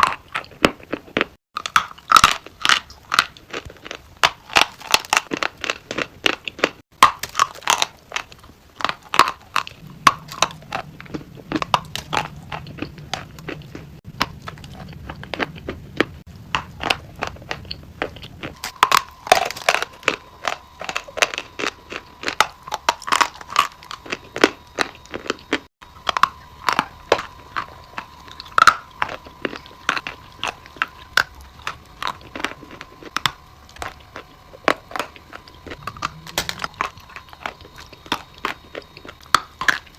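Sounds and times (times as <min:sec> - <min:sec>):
brittle food crunching: 0:00.0 - 0:39.9
faint high tone: 0:35.3 - 0:38.4.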